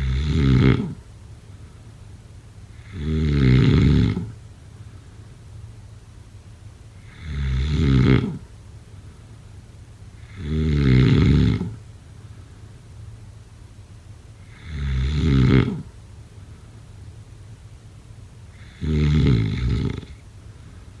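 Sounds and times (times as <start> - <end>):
person snoring: 0.0 - 1.0, 2.8 - 4.3, 7.0 - 8.4, 10.2 - 11.8, 14.4 - 15.9, 18.6 - 20.2.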